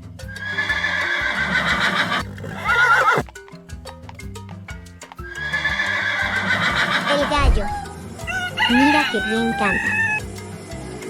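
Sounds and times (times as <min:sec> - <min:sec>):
light background music: 0:00.0 - 0:11.0
horse neighing: 0:00.4 - 0:03.3, 0:05.4 - 0:07.4
hoof clip-clops: 0:00.5 - 0:07.4.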